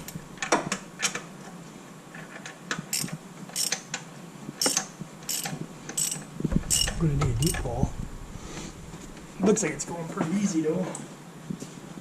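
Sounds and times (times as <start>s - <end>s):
ratchet wrench clicking: 2.9s - 3.9s, 4.6s - 7.7s.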